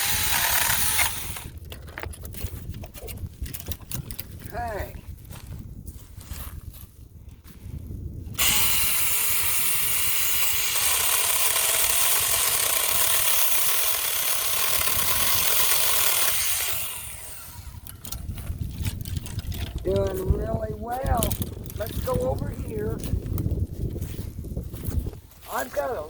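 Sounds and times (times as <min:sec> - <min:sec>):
electric chainsaw cutting branch: 0:00.0 - 0:01.6, 0:08.4 - 0:19.7.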